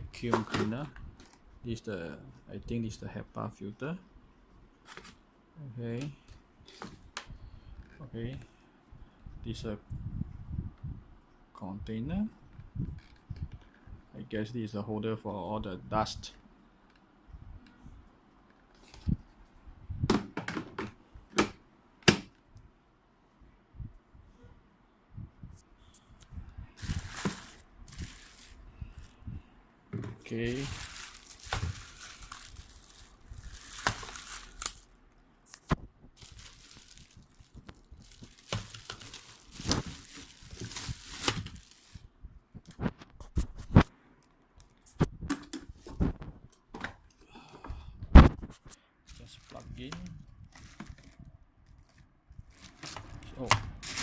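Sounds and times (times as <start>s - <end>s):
plastic packaging crinkling: 26.8s - 29.2s, 30.3s - 42.1s, 49.1s - 53.2s, 53.8s - 54.0s.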